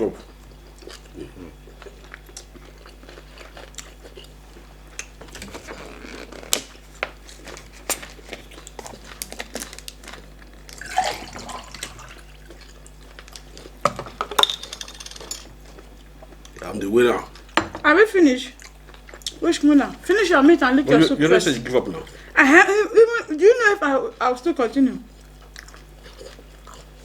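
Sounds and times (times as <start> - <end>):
wet chewing with mouth clicks: 0.2 - 10.8, 18.6 - 19.4, 25.1 - 27.0.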